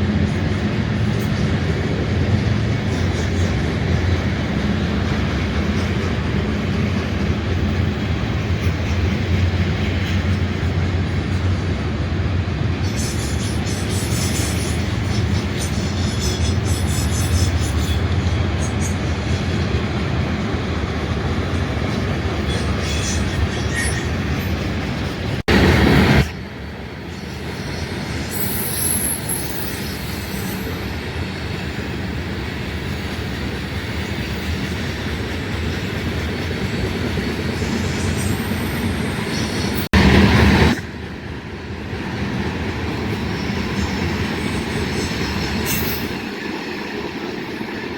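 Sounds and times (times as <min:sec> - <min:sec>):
freight train rumbling past: 0:00.0 - 0:47.9.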